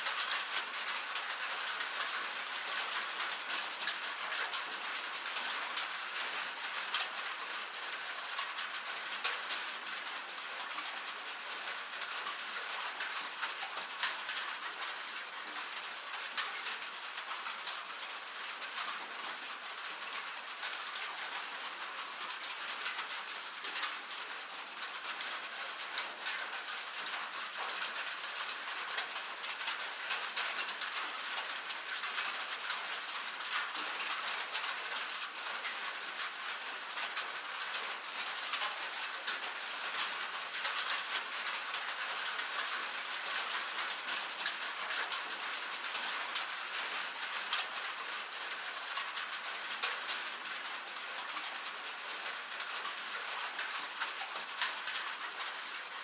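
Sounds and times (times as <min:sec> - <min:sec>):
rain on a metal roof: 0:00.0 - 0:56.0.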